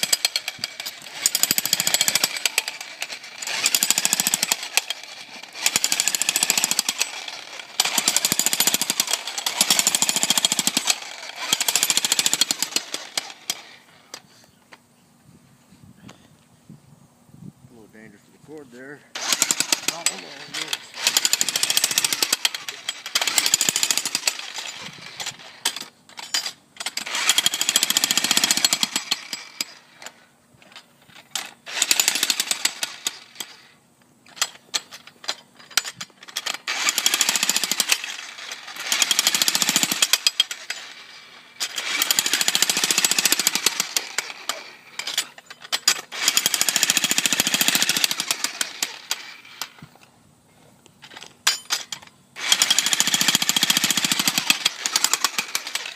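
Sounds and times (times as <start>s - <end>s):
jackhammer breaking concrete: 0.0s - 13.7s, 19.2s - 29.8s, 31.7s - 33.6s, 35.7s - 49.7s, 51.8s - 55.9s.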